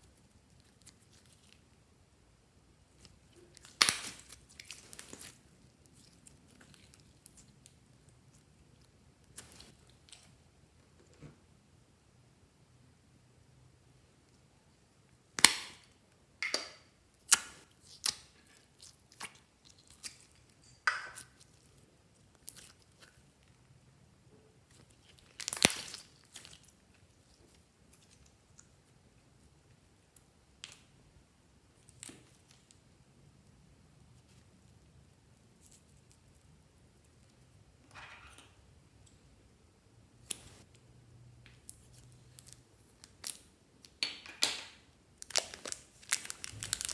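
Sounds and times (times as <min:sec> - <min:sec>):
slime sticky pops and crackles: 0:03.6 - 0:05.4, 0:15.4 - 0:19.4, 0:25.0 - 0:26.7.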